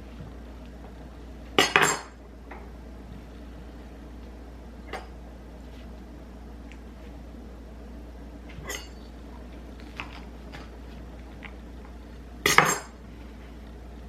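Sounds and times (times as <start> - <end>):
dishes and cutlery clinking: 1.6 - 2.2, 8.6 - 9.1, 12.4 - 13.0
dishes clattering: 1.6 - 2.2, 8.6 - 9.1, 12.4 - 13.0.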